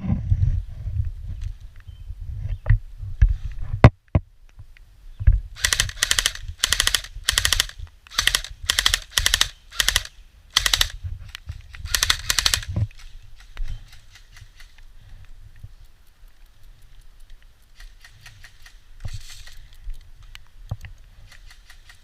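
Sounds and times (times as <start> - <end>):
airsoft guns firing bursts: 5.6 - 11.0, 11.8 - 12.8.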